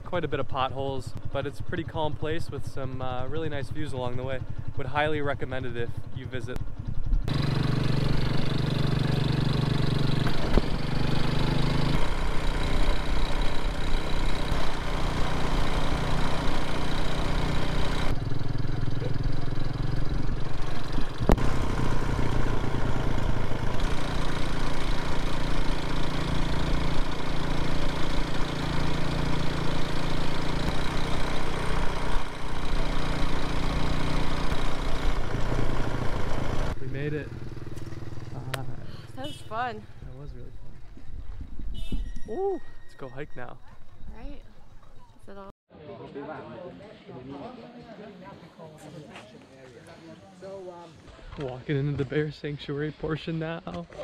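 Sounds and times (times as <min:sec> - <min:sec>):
motorbike engine running: 0:00.4 - 0:42.4
road and wind noise: 0:06.5 - 0:45.4.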